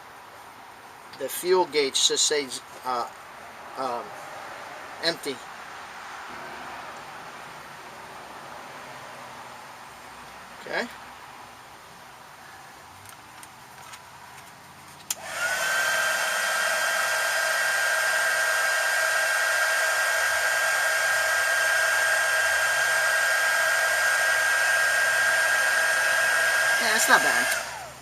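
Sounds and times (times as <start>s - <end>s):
heat gun fan blowing with whine: 15.0s - 28.0s.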